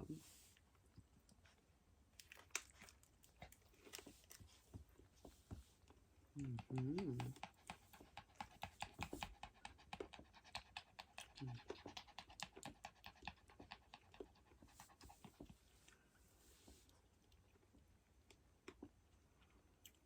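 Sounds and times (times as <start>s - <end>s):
dog panting rapidly: 6.4s - 15.7s.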